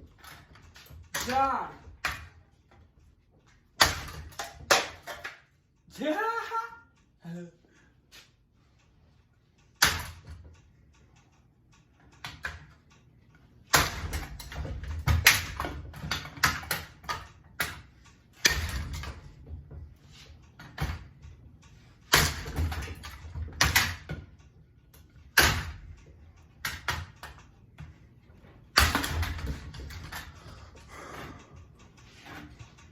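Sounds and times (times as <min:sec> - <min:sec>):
loose parts clattering: 0:09.6 - 0:32.9.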